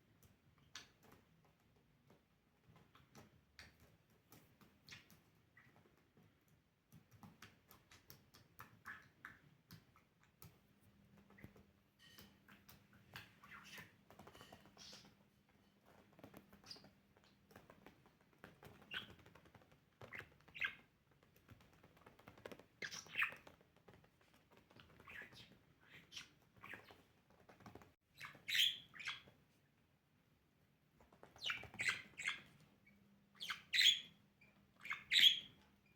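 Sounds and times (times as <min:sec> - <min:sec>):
small clicks and taps: 0:00.1 - 0:25.6, 0:26.7 - 0:28.0
budgerigar chirping: 0:28.2 - 0:29.2, 0:33.4 - 0:34.2, 0:34.8 - 0:35.6.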